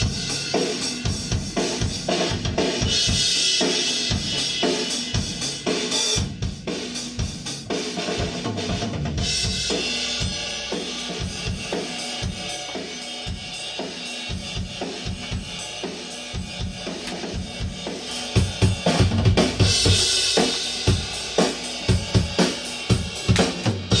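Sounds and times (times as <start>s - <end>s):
rock drum kit playing: 0.0s - 24.0s
electric bass line: 16.3s - 24.0s.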